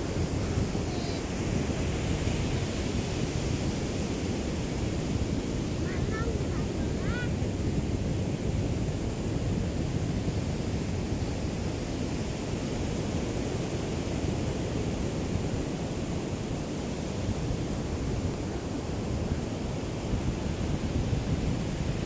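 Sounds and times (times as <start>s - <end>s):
small waves lapping on shore: 0.0s - 22.0s
wind rumble on microphone: 0.0s - 22.0s.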